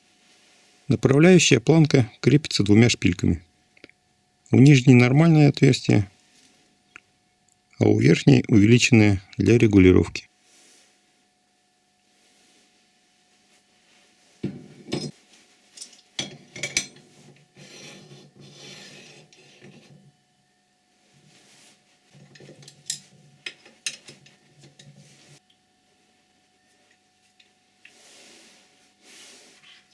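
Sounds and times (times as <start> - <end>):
steel parts clinking and scraping: 14.8 - 20.1, 22.1 - 25.2.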